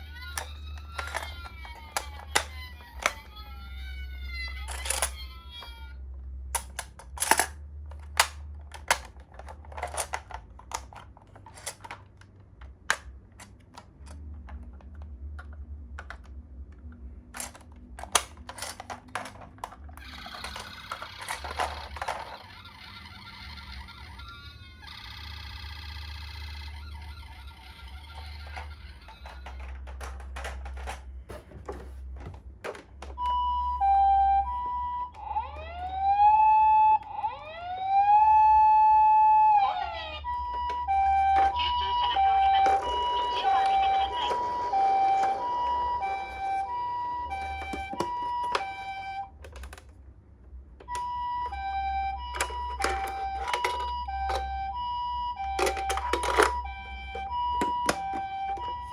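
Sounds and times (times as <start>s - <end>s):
toy two-tone siren: 0.0s - 6.0s, 17.4s - 31.0s, 33.0s - 49.8s, 50.8s - 58.9s
plastic toys clicking and clattering: 0.0s - 35.2s, 40.2s - 50.0s, 50.7s - 58.9s.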